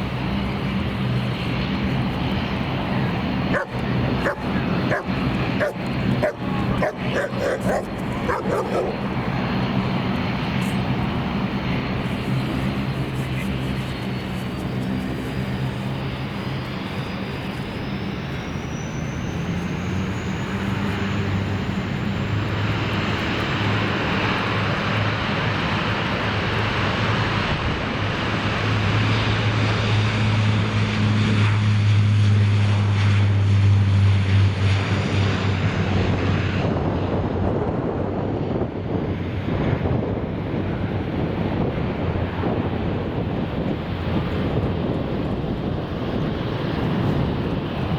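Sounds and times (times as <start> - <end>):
airliner engines humming and whining: 0.0 - 47.9
wind noise on microphone: 34.2 - 47.9.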